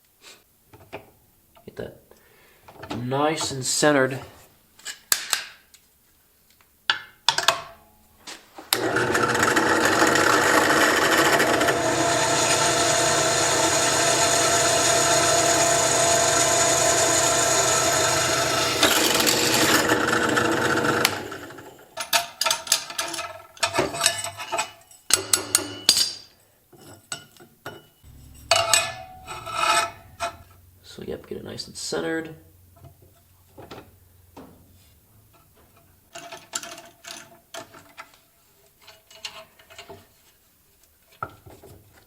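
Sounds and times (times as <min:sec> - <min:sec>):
drill press motor drilling metal: 0:08.8 - 0:21.8.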